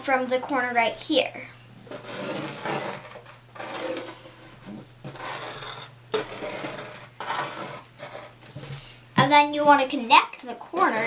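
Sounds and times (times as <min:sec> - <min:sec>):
drawing tool scratching paper: 0:01.9 - 0:08.8.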